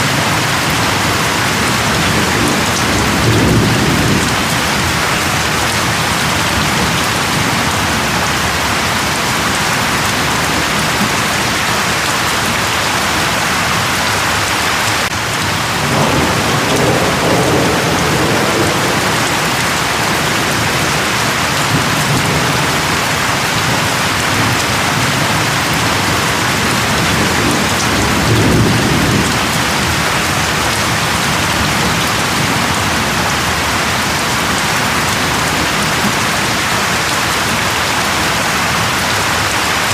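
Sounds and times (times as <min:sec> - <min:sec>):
heavy rain falling: 0:00.0 - 0:39.9
low thunder rumbles: 0:00.1 - 0:11.5, 0:15.1 - 0:36.8.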